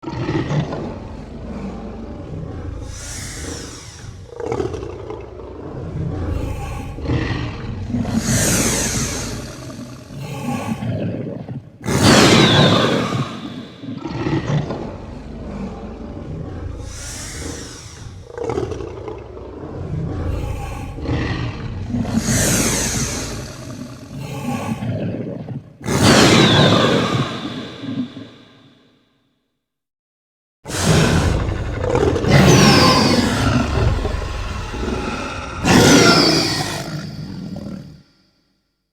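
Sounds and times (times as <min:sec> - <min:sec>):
low rumbling growls: 0:00.0 - 0:28.5, 0:30.7 - 0:38.1
dinosaur roar: 0:00.0 - 0:28.6, 0:30.7 - 0:38.1
shrill screeching roar: 0:11.9 - 0:13.9, 0:25.9 - 0:28.4, 0:30.7 - 0:38.0.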